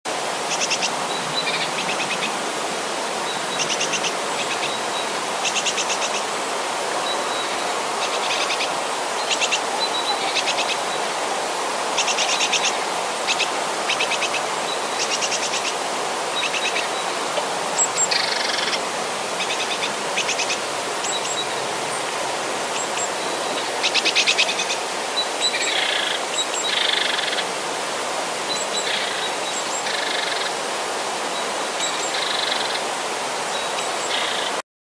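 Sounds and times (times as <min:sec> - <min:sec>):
river rushing: 0:00.1 - 0:34.6
birds trilling and chirping: 0:11.8 - 0:27.2.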